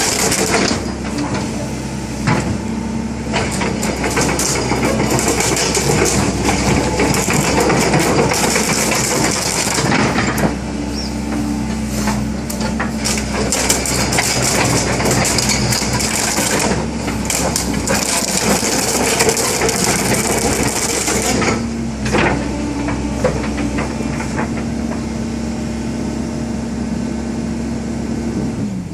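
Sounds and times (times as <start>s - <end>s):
excavator diesel engine running: 0.0s - 28.9s
hydraulic hissing and clattering: 3.3s - 22.2s.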